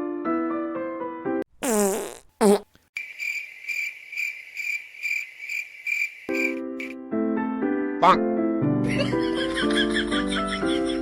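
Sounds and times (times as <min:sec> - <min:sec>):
fart sound: 0:01.6 - 0:02.8
crickets chirping: 0:03.0 - 0:07.0.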